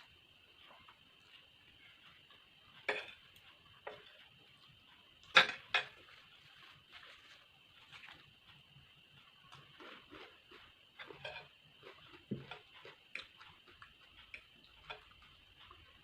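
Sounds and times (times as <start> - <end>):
utensils clicking against a dish: 2.8 - 6.4, 10.6 - 16.0.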